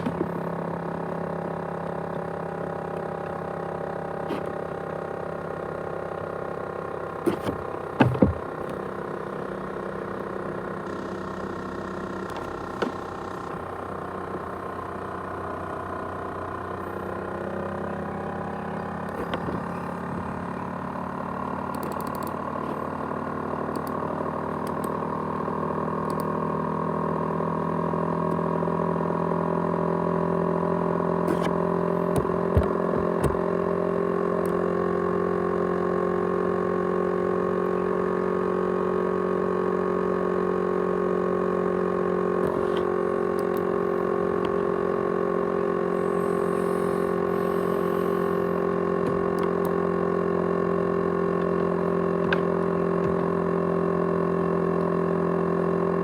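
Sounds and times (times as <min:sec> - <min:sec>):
laptop fan whirring: 0:07.1 - 0:26.4, 0:30.8 - 0:34.7, 0:42.2 - 0:53.8
scattered clicks: 0:21.7 - 0:22.4.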